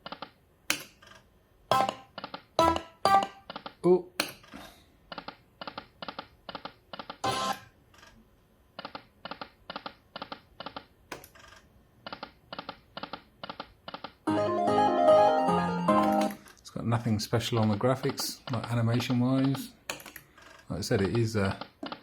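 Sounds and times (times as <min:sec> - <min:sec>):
slot machine reel-stop clicks: 0:15.8 - 0:16.4.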